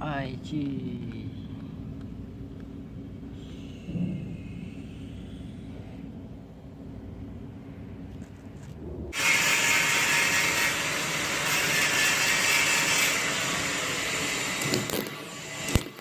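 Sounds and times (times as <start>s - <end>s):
welding arc crackling: 9.1s - 16.0s.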